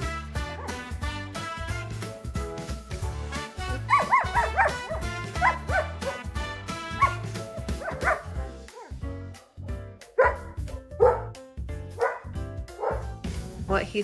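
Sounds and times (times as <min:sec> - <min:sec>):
background music: 0:00.0 - 0:14.0
dog barking: 0:03.8 - 0:06.3, 0:06.9 - 0:09.0, 0:10.1 - 0:11.4, 0:12.0 - 0:13.2.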